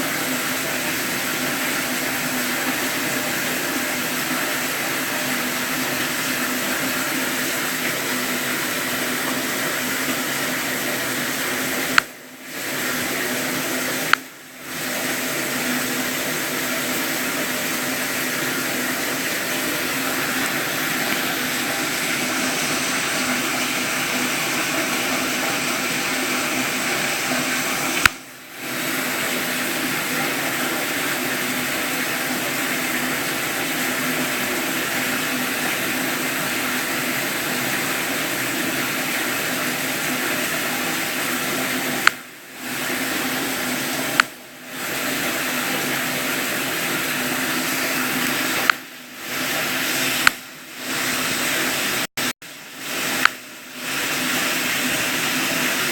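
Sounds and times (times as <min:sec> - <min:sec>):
running water rushing: 0:00.0 - 0:55.9
sharp click: 0:28.0 - 0:28.2, 0:50.2 - 0:50.4.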